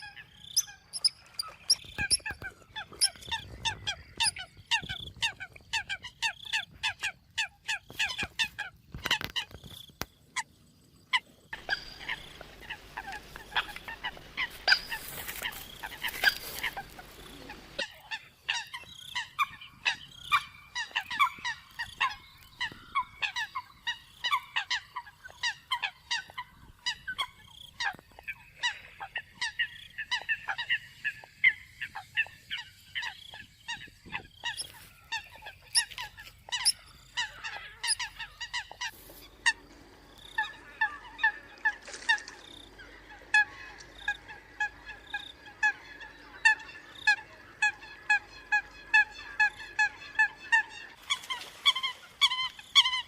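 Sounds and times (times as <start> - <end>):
coots honking calls: 11.6 - 53.0.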